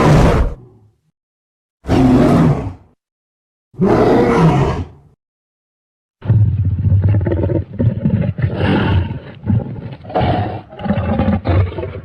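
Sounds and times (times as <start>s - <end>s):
monster growling roars: 1.9s - 2.9s.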